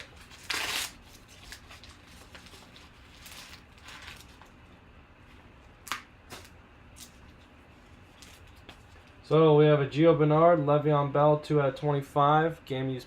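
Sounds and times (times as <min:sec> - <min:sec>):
wrapper ripping: 0:00.0 - 0:04.5.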